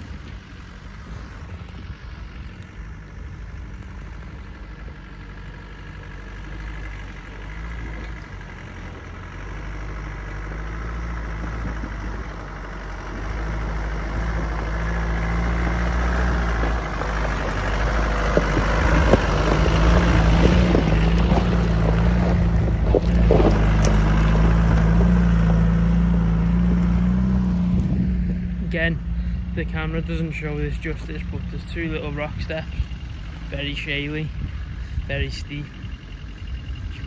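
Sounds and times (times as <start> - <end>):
truck engine running: 0.0 - 37.0
stones cracking under tyres: 6.4 - 36.2.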